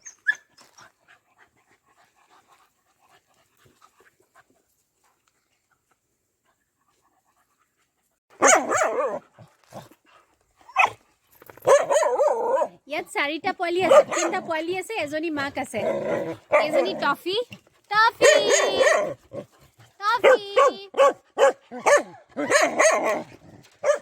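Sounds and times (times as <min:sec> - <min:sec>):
dog barking: 0:08.4 - 0:09.3, 0:10.8 - 0:11.0, 0:11.6 - 0:12.8, 0:13.8 - 0:14.5, 0:16.5 - 0:17.0, 0:18.2 - 0:19.2, 0:20.2 - 0:24.0.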